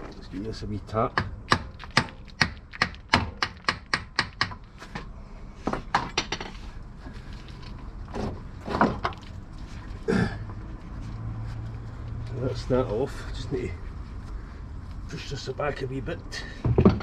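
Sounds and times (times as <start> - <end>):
hammer tapping steel: 1.1 - 4.6.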